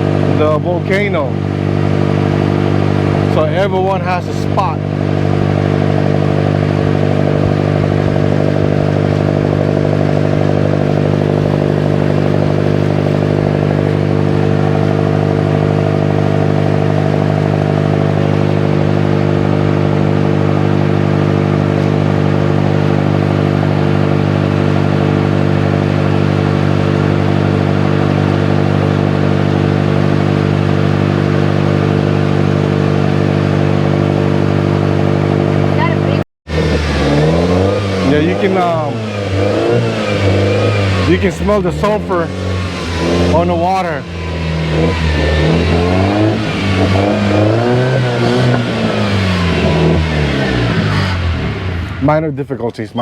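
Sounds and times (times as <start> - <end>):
boat engine droning: 0.0 - 53.0.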